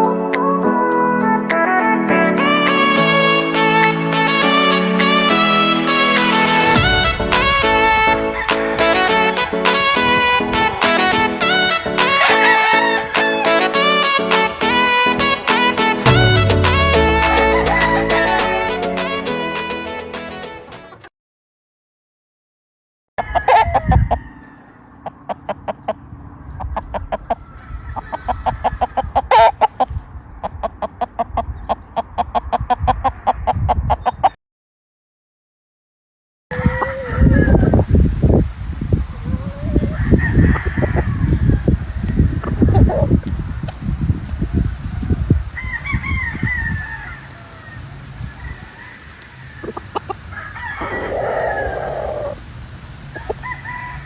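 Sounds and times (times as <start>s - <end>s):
loud chicken call: 5.1s - 19.8s, 23.2s - 24.8s, 27.4s - 29.8s, 36.5s - 37.8s, 39.2s - 42.0s, 45.5s - 52.4s
roosters crowing: 5.3s - 19.7s, 23.2s - 25.6s, 27.3s - 29.8s, 36.5s - 38.1s, 39.1s - 43.1s, 44.6s - 54.0s
chickens clucking: 6.1s - 19.8s, 23.3s - 34.4s, 36.5s - 37.9s, 39.0s - 52.4s, 53.0s - 54.0s
low rumble: 16.0s - 18.7s.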